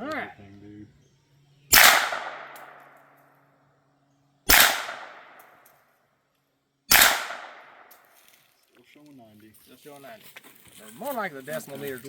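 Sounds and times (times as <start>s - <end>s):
suppressed gunshot: 1.7s - 3.0s, 4.5s - 5.5s, 6.9s - 7.9s
gunshot echo: 1.7s - 3.2s, 4.5s - 5.6s, 6.9s - 8.0s.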